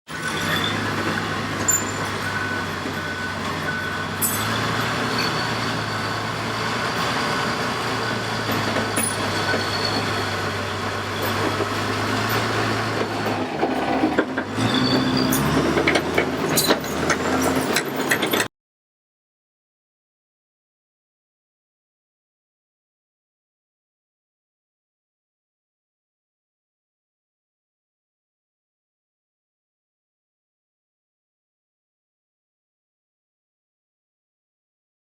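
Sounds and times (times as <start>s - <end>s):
diesel machinery engine hum: 0.1s - 18.5s
knocks and clanks: 11.2s - 18.5s.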